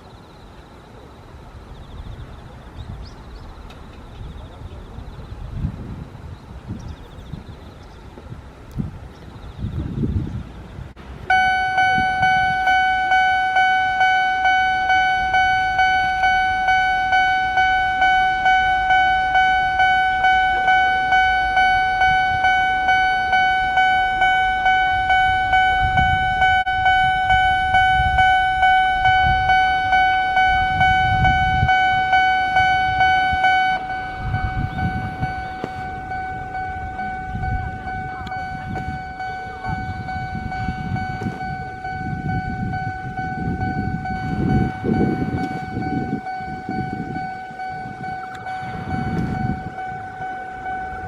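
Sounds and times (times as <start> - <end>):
level-crossing alarm clanging: 11.2 - 51.0.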